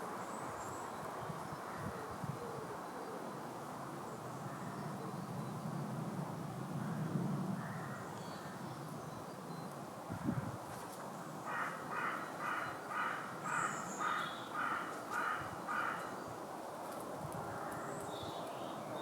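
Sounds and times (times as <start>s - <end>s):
bird calling: 11.5s - 16.2s.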